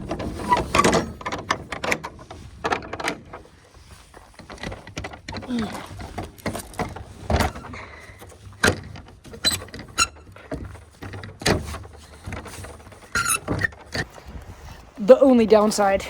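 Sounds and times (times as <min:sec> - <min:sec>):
gate squeaking: 0:09.4 - 0:10.4, 0:12.5 - 0:14.3.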